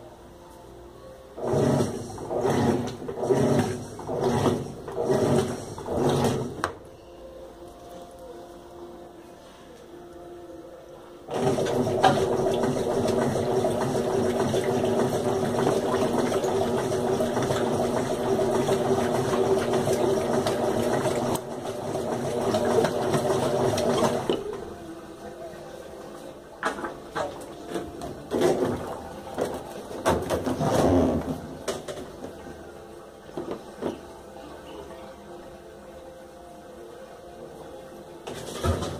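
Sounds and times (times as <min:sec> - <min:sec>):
washing machine hum: 0:01.4 - 0:06.6, 0:11.3 - 0:34.1, 0:38.2 - 0:38.9.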